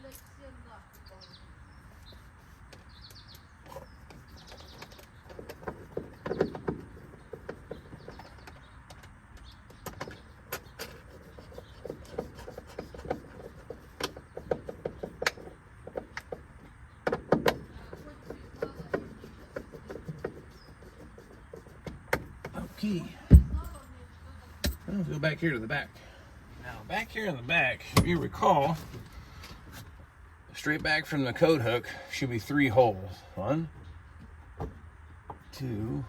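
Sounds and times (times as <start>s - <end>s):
hands and tools clicking: 2.7s - 22.6s.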